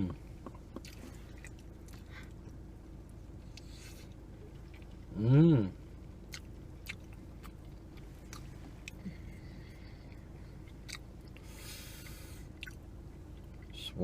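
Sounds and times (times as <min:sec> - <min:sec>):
chewing fried food: 0:00.0 - 0:02.6, 0:06.2 - 0:11.6, 0:12.5 - 0:13.8
steady low hum: 0:00.0 - 0:14.0.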